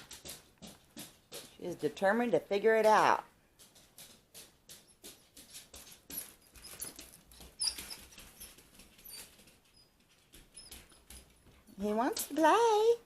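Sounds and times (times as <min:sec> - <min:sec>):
paws and claws on hard surface: 0:00.0 - 0:12.5
high squeaks: 0:06.1 - 0:11.5.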